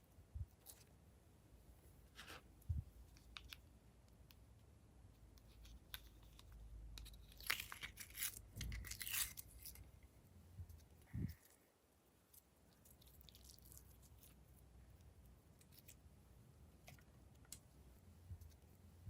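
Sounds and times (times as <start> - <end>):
crackling tearing handling noise: 5.8 - 9.9.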